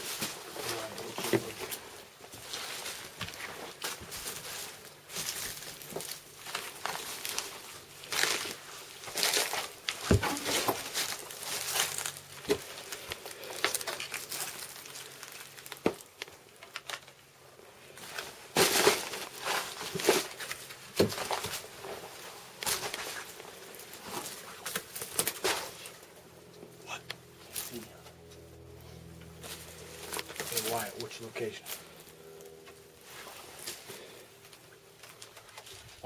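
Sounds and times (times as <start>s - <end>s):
rustling and crinkling: 0.0s - 36.0s.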